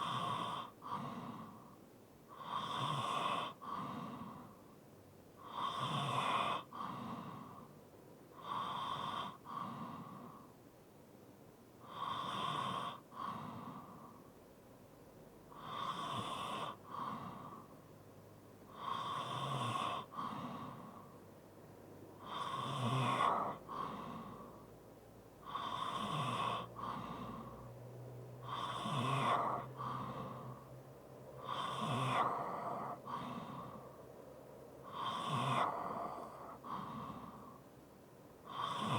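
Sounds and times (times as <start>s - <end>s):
light snoring: 0.0s - 4.7s, 5.4s - 10.6s, 11.8s - 14.3s, 15.5s - 17.9s, 18.7s - 21.2s, 22.2s - 24.8s, 25.4s - 37.8s, 38.4s - 38.9s
person breathing heavily: 3.5s - 4.7s, 16.8s - 17.8s, 23.2s - 24.7s, 26.6s - 27.7s, 28.4s - 30.8s, 31.4s - 37.8s.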